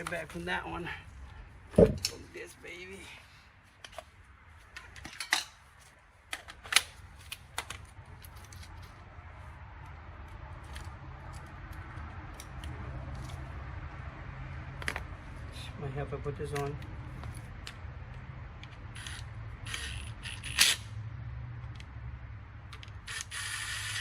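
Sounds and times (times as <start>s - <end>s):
hard parts clicking and clattering: 1.7s - 2.2s, 4.7s - 9.0s.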